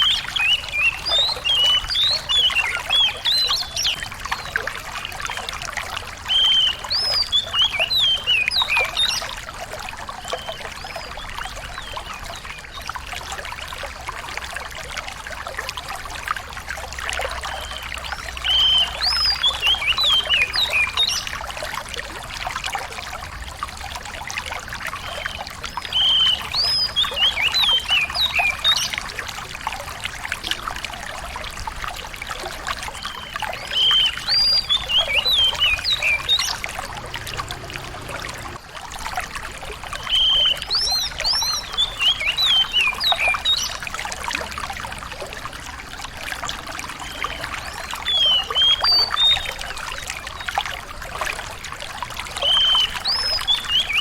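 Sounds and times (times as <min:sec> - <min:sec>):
songbird chirping: 0:00.0 - 0:04.6, 0:17.5 - 0:21.3, 0:33.0 - 0:38.6
trickle of running water: 0:00.0 - 0:54.0.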